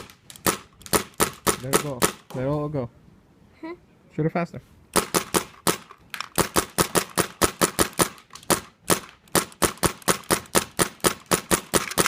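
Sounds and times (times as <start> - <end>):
paintball gun firing: 0.0 - 2.4, 5.0 - 12.0.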